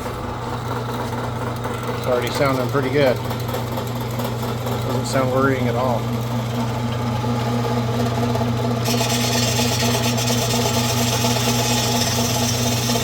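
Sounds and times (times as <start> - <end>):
saw motor hum: 0.0 - 13.0
saw blade rasping through steel: 8.8 - 13.0.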